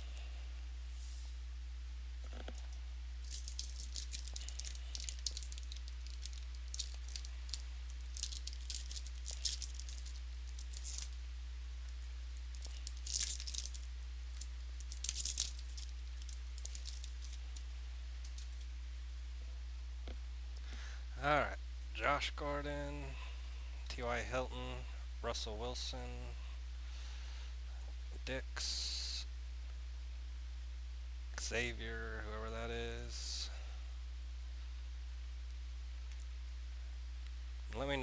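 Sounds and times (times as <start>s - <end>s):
low electrical hum: 0.0s - 38.0s
plastic wrapper tearing and crinkling: 3.2s - 11.2s, 12.5s - 17.6s.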